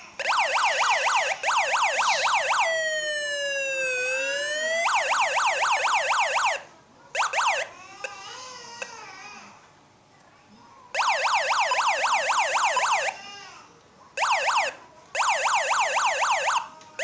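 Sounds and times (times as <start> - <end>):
electronic siren yelping and wailing: 0.2 - 6.6, 7.2 - 7.7, 11.0 - 13.2, 14.2 - 16.7.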